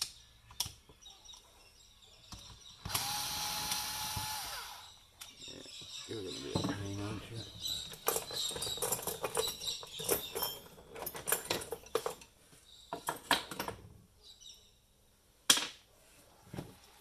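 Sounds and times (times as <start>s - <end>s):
small parts and tools rattling: 6.5s - 13.9s.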